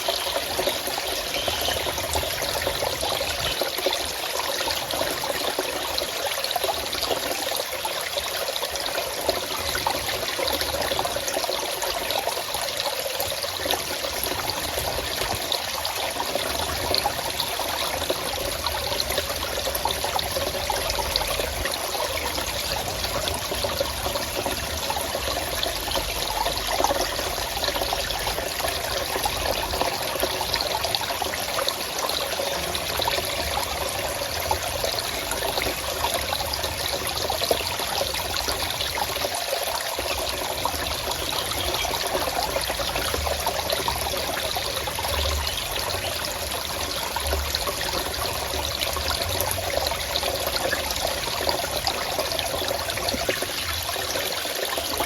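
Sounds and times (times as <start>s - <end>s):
stream flowing and trickling: 0.0s - 55.0s.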